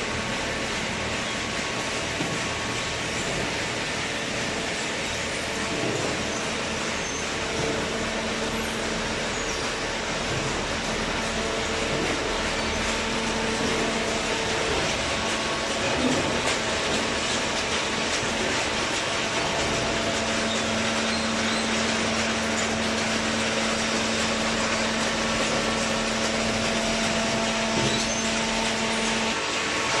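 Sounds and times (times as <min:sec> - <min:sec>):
machinery noise: 0:00.0 - 0:30.0.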